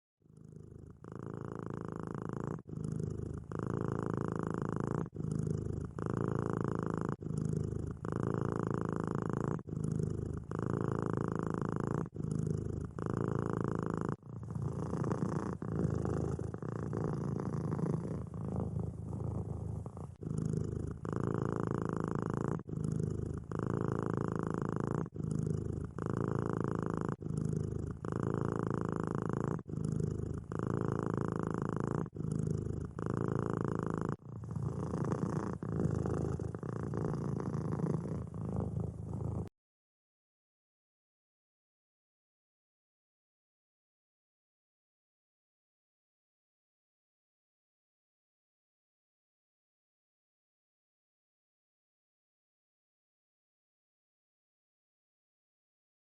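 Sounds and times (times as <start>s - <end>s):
cat purring: 0.2s - 39.5s.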